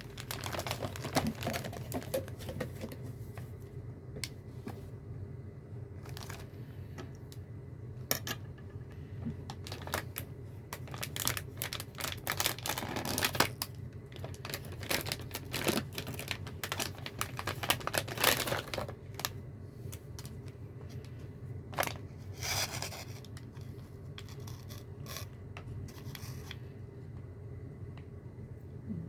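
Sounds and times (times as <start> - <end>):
packaging clicks: 0.0 - 2.6
plastic packaging tearing and crinkling: 0.0 - 2.6, 6.0 - 6.5, 9.6 - 19.4, 21.7 - 23.4.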